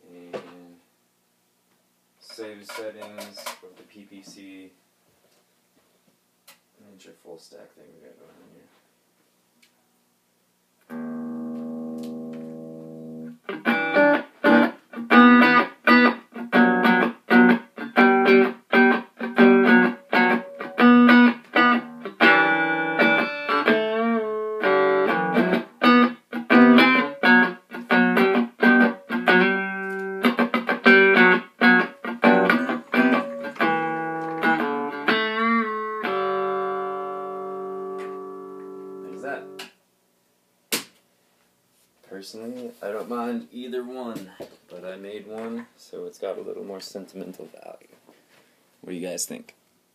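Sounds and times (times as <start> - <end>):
electric guitar chords: 10.8 - 39.6.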